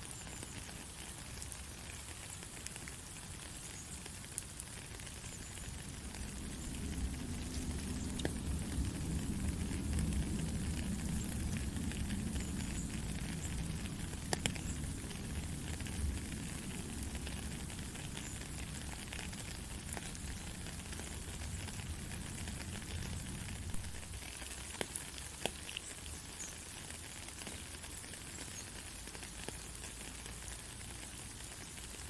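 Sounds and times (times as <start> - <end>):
raindrops ticking: 0.0 - 32.0
heavy rain hissing: 3.8 - 24.4
low rumble: 5.8 - 17.8.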